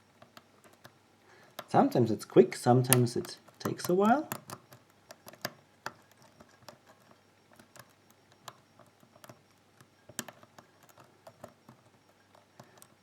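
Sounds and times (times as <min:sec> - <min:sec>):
lock pick clicking: 0:02.8 - 0:13.0.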